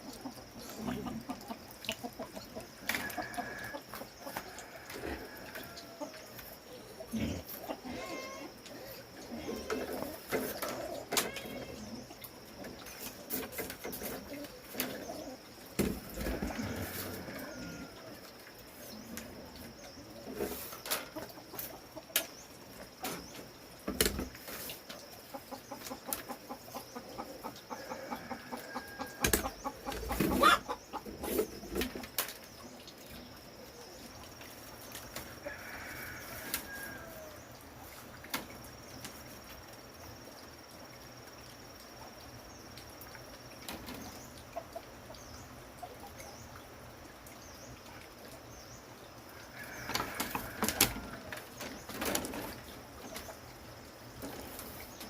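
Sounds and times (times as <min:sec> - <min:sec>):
chickens clucking: 0:00.0 - 0:18.1, 0:18.8 - 0:32.3.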